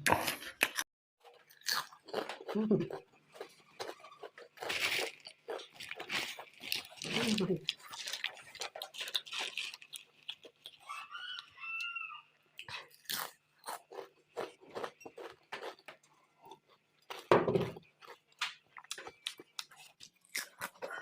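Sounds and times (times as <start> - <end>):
crunching and chewing chips: 0.1 - 21.0.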